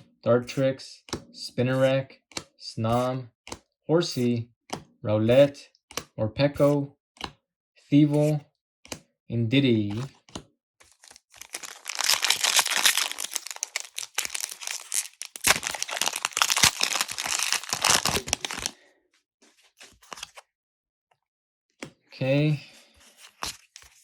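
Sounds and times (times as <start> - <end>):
foil wrapper crinkling and tearing: 10.9 - 18.8.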